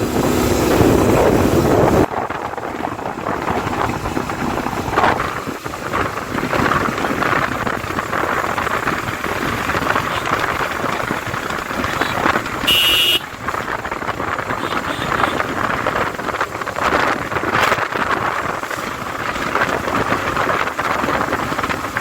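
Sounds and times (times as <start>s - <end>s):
wind and motorcycle road noise: 0.0s - 22.0s
short high beep: 12.7s - 13.2s.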